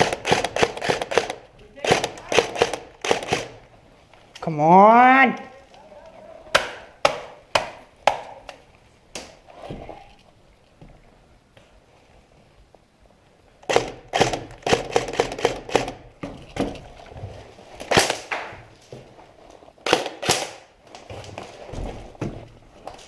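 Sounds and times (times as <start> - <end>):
airsoft gunfire: 0.0 - 3.6, 13.7 - 16.0, 19.9 - 20.6.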